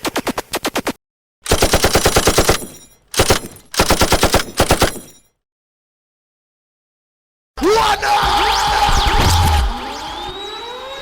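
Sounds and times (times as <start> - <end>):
automatic gunfire bursts: 1.5 - 5.2.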